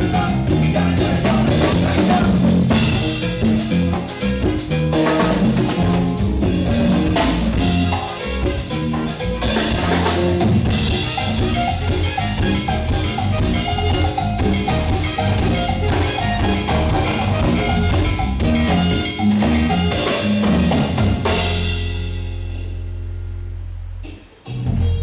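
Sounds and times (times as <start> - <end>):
live band playing upbeat instrumental: 0.0 - 25.0.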